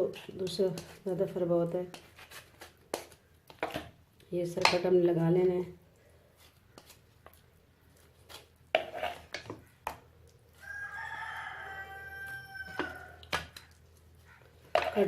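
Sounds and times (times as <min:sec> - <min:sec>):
rooster crowing: 0:10.6 - 0:13.3.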